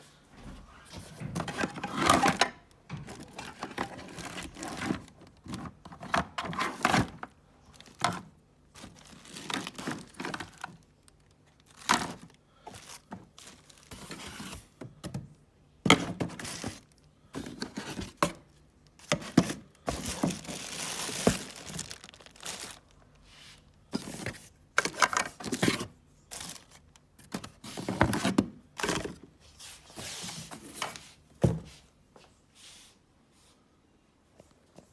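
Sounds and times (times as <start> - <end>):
plastic packaging rustling: 1.4 - 14.8, 15.9 - 29.3.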